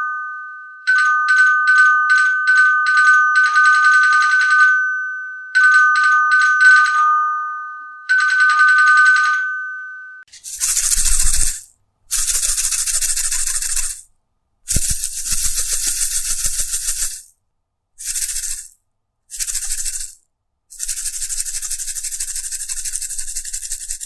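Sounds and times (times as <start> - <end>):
bell clapper rattling: 10.3 - 14.1, 14.7 - 17.3, 18.0 - 24.0.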